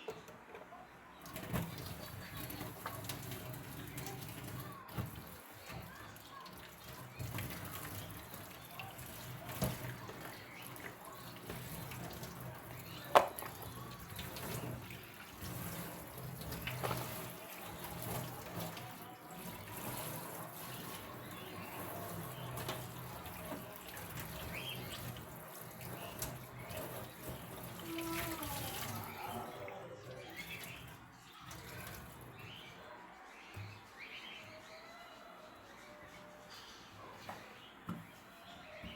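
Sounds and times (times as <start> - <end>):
tap water running into sink: 1.2 - 29.6, 30.2 - 32.5.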